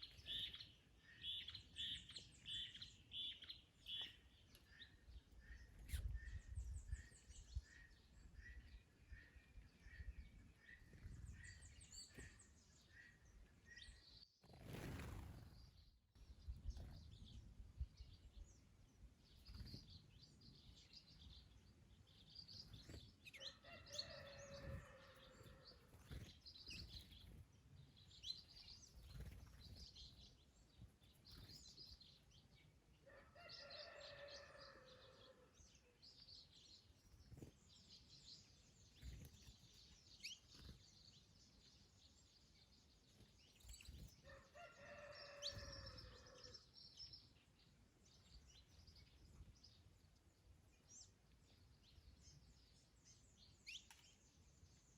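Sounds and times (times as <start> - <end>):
small birds chirping: 0.0 - 54.9
rooster crowing: 44.3 - 46.5.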